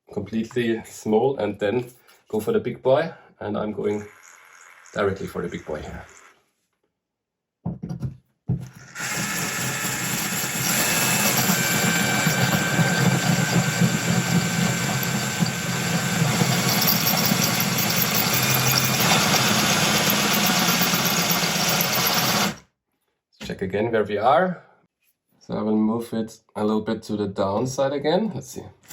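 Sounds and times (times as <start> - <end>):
power drill grinding into tile: 3.8 - 6.4, 8.6 - 22.6.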